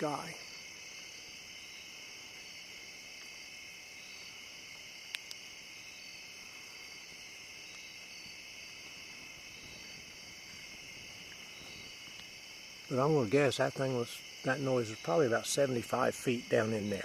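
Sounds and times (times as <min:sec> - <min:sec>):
crickets trilling: 0:00.0 - 0:17.0
sharp clicks: 0:05.1 - 0:05.4.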